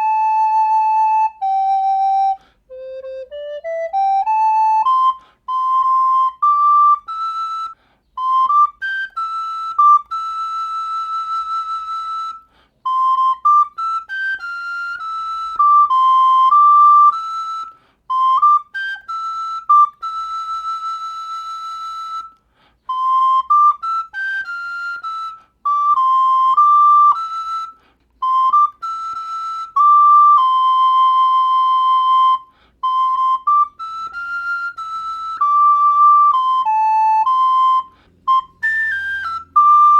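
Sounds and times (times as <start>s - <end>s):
soprano recorder melody: 0.0s - 39.9s.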